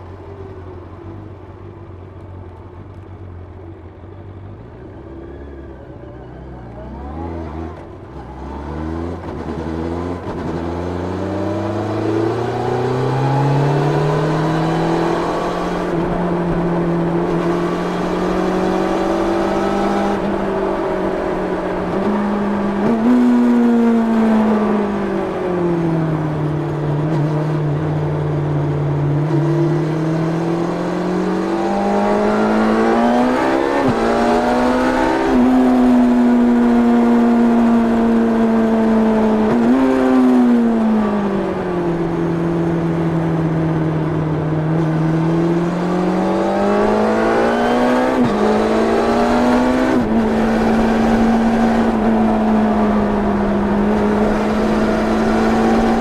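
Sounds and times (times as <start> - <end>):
motorcycle engine revving: 26.2 - 56.0.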